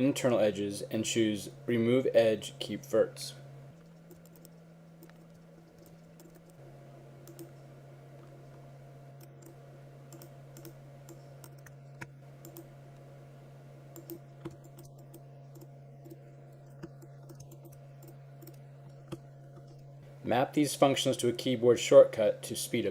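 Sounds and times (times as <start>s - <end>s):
low electrical hum: 0.0s - 22.9s
computer mouse and keyboard clicks: 3.8s - 6.6s, 9.2s - 12.7s, 14.0s - 19.8s.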